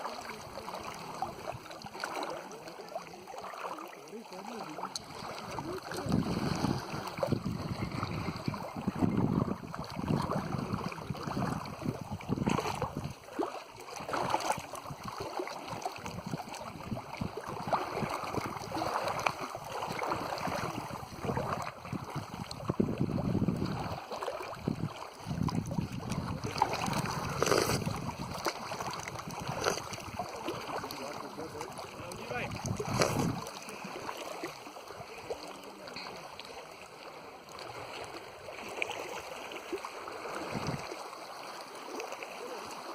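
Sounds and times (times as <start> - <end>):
water lapping: 0.0 - 42.9
wind gusting on microphone: 5.5 - 13.2, 20.1 - 24.0, 24.6 - 30.2, 32.0 - 33.5, 40.4 - 40.9.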